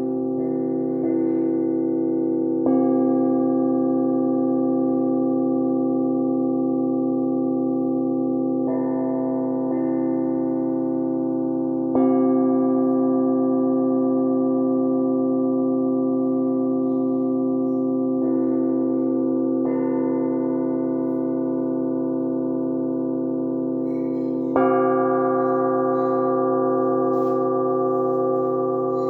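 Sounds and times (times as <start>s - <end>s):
flat bells ringing: 23.7s - 29.0s.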